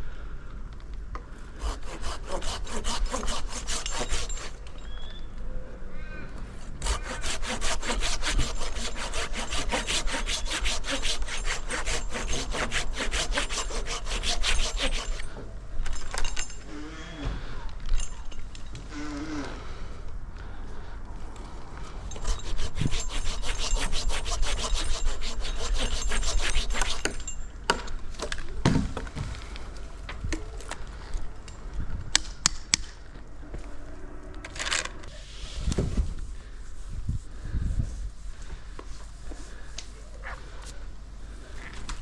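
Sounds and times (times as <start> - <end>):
hand saw cutting wood: 1.6 - 4.6, 6.7 - 15.3, 22.1 - 27.4.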